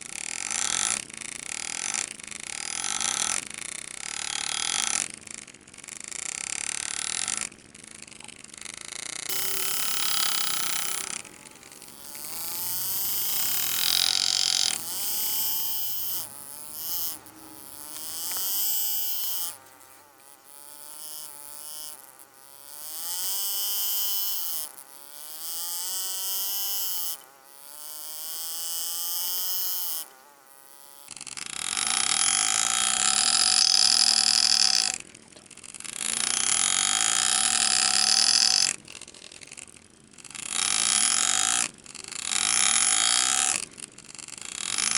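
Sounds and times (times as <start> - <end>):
power graver cutting steel: 9.3 - 31.0.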